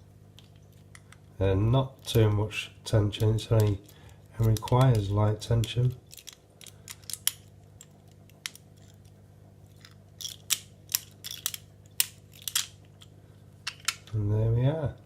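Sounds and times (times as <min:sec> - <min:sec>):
lock picking tools clicking: 0:03.2 - 0:09.0, 0:09.8 - 0:13.1.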